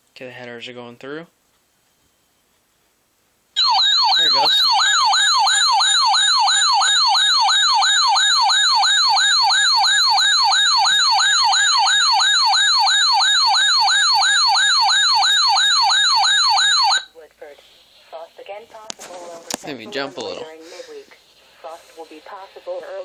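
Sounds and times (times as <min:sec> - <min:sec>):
weather radio alarm siren: 0:03.6 - 0:17.1.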